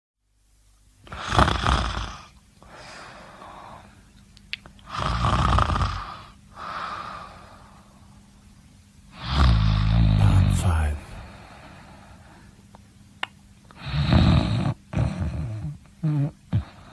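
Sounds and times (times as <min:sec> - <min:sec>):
quiet long breath: 0:02.6 - 0:04.1, 0:06.2 - 0:08.2, 0:11.1 - 0:12.6
person snoring: 0:09.2 - 0:11.5.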